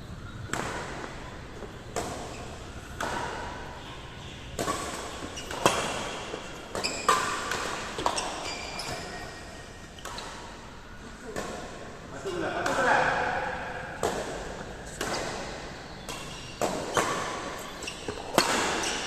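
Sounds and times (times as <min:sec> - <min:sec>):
racket hitting shuttlecock: 0:00.5 - 0:01.2, 0:01.8 - 0:03.8, 0:04.5 - 0:09.2, 0:10.0 - 0:10.6, 0:12.4 - 0:19.0.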